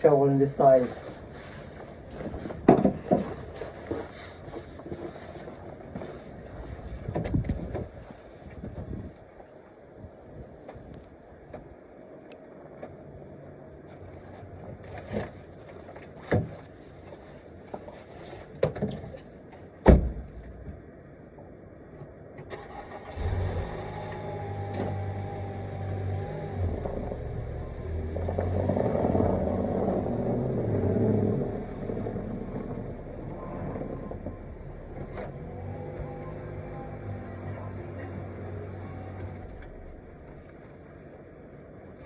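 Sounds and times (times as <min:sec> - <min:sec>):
door slam: 0:19.8 - 0:20.4
car engine starting and running: 0:22.5 - 0:40.8.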